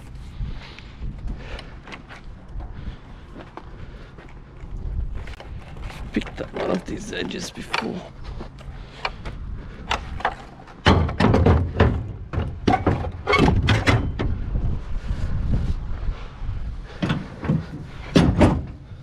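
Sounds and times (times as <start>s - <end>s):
scrap metal knocks and clunks: 5.3s - 14.5s, 16.9s - 19.0s
low rumble: 13.5s - 18.1s.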